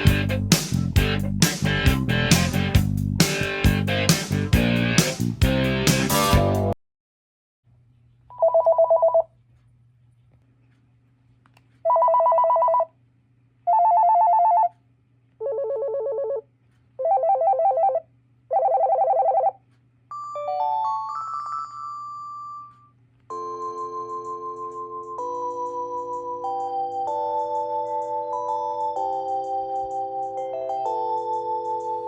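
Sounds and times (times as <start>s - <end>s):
trilling phone ringtones: 11.9s - 12.9s, 20.1s - 29.1s.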